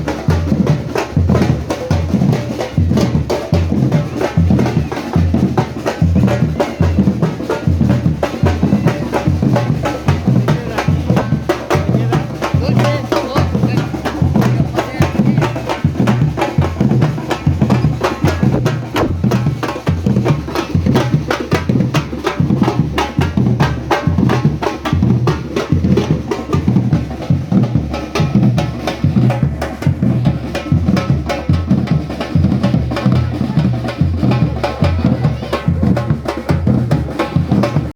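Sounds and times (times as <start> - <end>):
deep bass drums: 14.3 - 22.0
sharp stick hits: 18.6 - 19.4.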